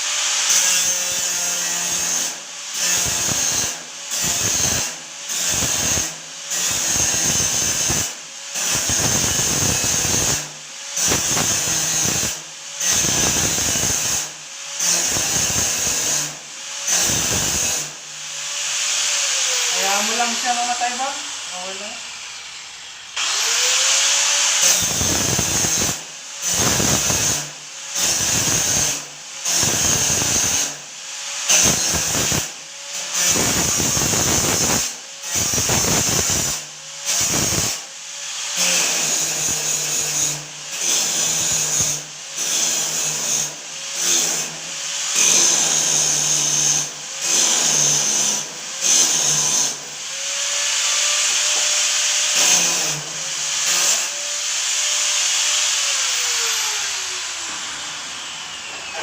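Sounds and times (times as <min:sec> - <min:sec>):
angle grinder grinding steel: 0:00.0 - 0:59.0
grinder motor rising whine: 0:55.8 - 0:59.0.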